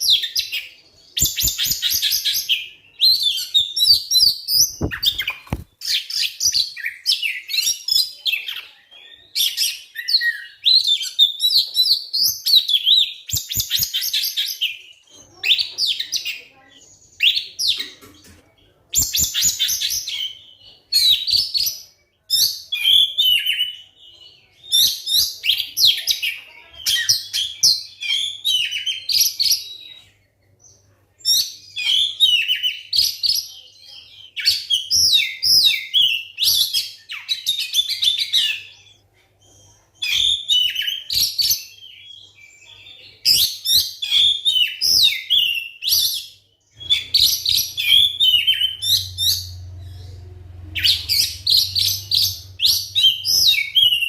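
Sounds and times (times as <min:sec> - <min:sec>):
bird singing chirps and whistles: 0:00.0 - 0:14.9, 0:31.2 - 0:49.6, 0:50.8 - 0:54.0.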